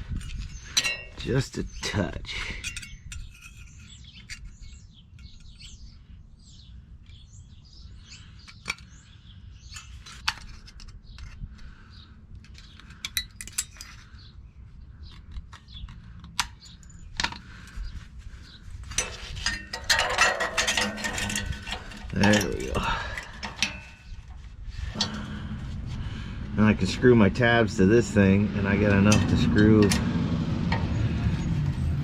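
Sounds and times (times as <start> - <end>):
birds chirping: 0.2 - 32.0
metal scraping: 0.3 - 1.6, 18.8 - 32.0
sheet metal clicks and clinks: 0.7 - 1.5, 2.5 - 5.7, 12.4 - 14.1, 18.9 - 24.4.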